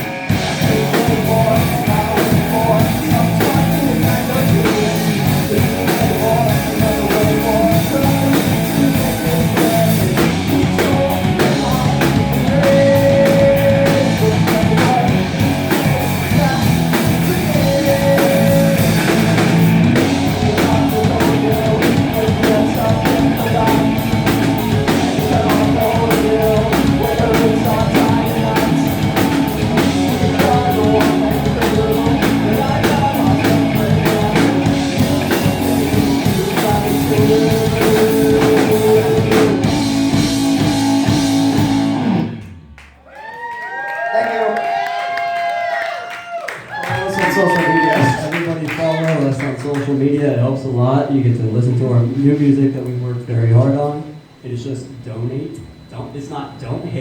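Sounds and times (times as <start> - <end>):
drum kit beat: 0.0 - 42.8
live rock band playing: 0.0 - 42.8.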